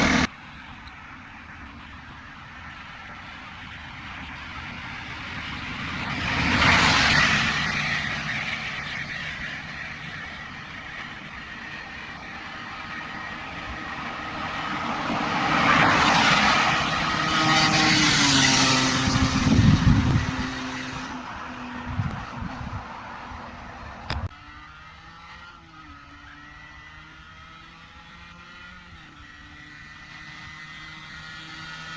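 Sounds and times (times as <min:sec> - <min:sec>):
two-stroke motorcycle engine running: 0:00.0 - 0:00.8
rushing wind noise: 0:03.1 - 0:24.3.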